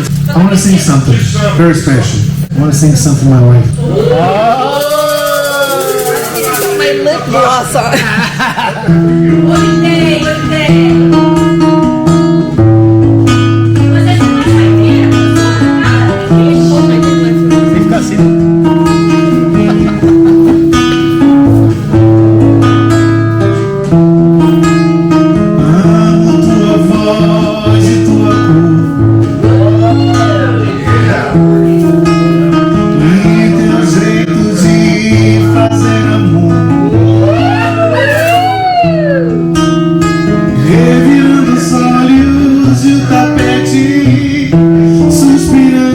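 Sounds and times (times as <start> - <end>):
sustained bass notes: 0.0 - 4.9, 5.8 - 45.9
guitar playing chords: 0.0 - 45.9
person singing: 25.6 - 31.4, 32.9 - 39.4, 40.5 - 45.9.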